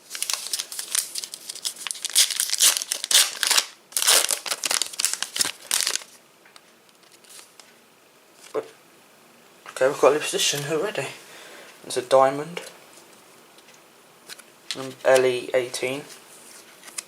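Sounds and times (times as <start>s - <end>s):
foil wrapper crinkling: 0.0s - 6.2s.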